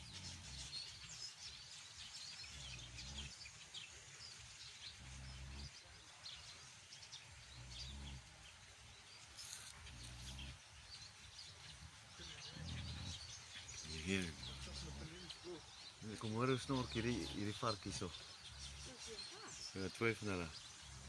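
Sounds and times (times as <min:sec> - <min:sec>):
small birds chirping: 0:00.0 - 0:21.0
pig snoring: 0:02.5 - 0:03.4, 0:04.9 - 0:05.8, 0:07.4 - 0:08.4, 0:09.4 - 0:10.6, 0:12.2 - 0:15.2.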